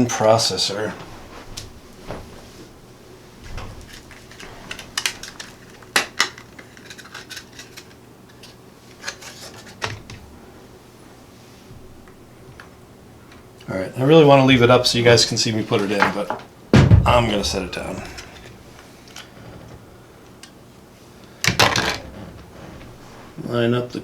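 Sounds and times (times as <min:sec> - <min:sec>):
faint low hum: 0:06.9 - 0:24.0.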